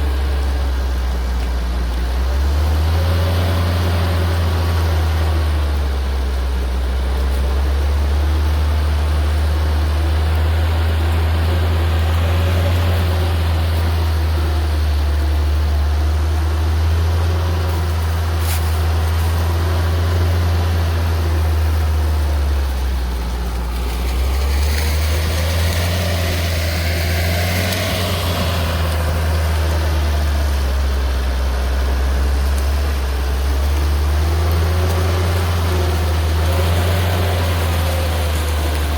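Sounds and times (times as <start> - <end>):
rough churning noise: 0.0 - 38.9
tiller motor humming: 0.0 - 38.9.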